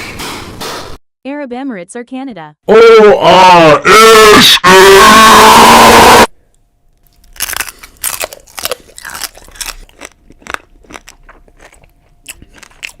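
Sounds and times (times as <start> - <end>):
sharp brittle crunches: 7.0 - 13.0.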